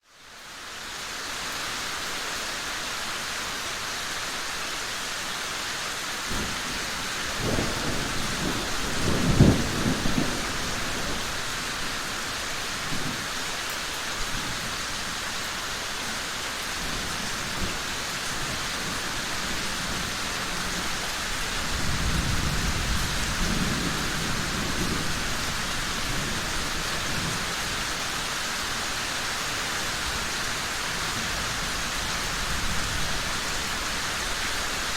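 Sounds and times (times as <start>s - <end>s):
heavy rain: 0.0s - 34.9s
thunder rumbling: 6.3s - 13.4s, 16.8s - 28.0s.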